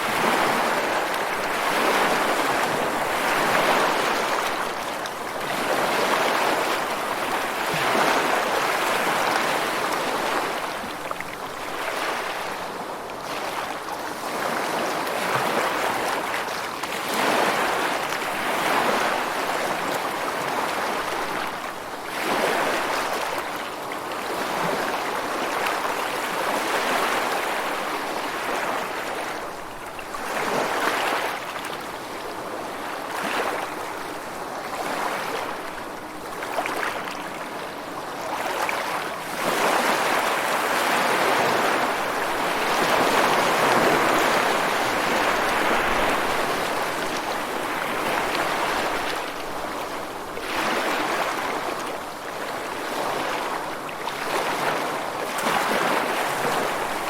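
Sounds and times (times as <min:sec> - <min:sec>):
rushing water: 0:00.0 - 0:57.0.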